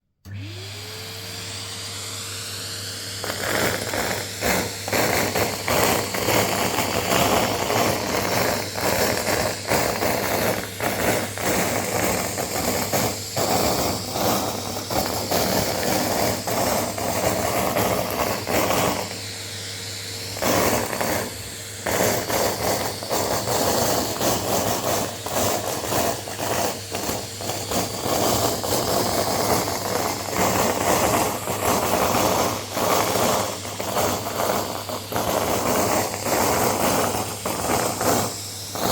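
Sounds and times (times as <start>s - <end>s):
vacuum cleaner motor: 0.1s - 38.9s
paper rattling up vacuum nozzle: 20.4s - 38.9s.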